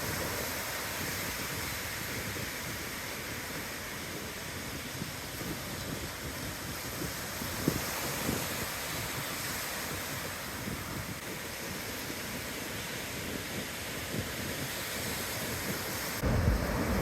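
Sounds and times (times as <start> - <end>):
waves breaking on beach: 0.0 - 17.0.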